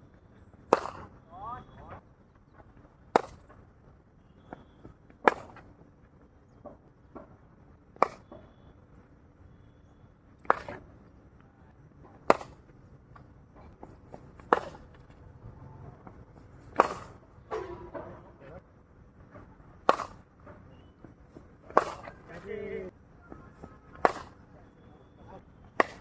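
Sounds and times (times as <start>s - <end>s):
cricket bat striking ball: 0.7s - 1.2s, 3.2s - 3.6s, 4.4s - 5.7s, 8.0s - 8.6s, 10.4s - 11.0s, 12.1s - 12.7s, 13.8s - 15.1s, 16.7s - 18.4s, 19.8s - 24.6s, 25.6s - 26.0s.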